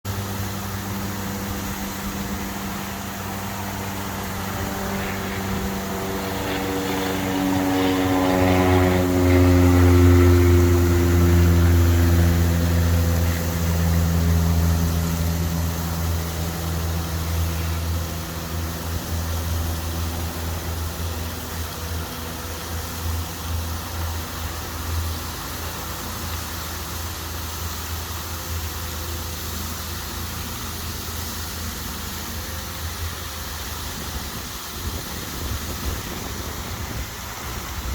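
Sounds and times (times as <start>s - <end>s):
fountain water rushing: 0.1s - 37.9s
propeller aircraft passing: 0.1s - 37.9s.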